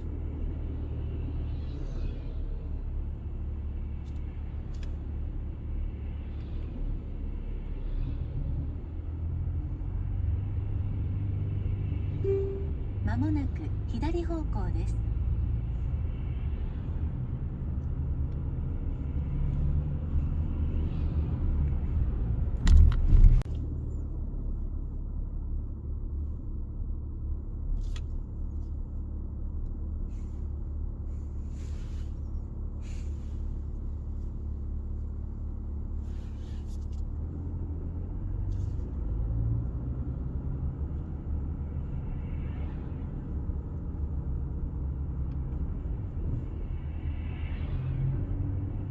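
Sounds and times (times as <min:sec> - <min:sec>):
low rumble in car cabin: 0:00.0 - 0:48.9.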